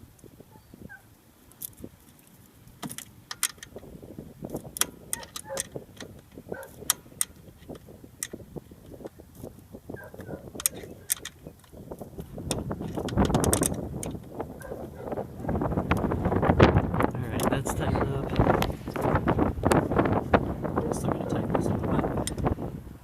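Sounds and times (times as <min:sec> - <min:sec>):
wrench clinking on bolt: 0:02.8 - 0:03.8, 0:04.8 - 0:08.4, 0:10.2 - 0:11.8, 0:12.5 - 0:14.2.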